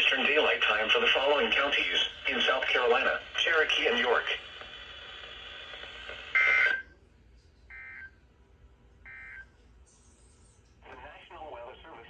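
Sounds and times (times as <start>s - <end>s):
static hiss: 0.0s - 6.8s.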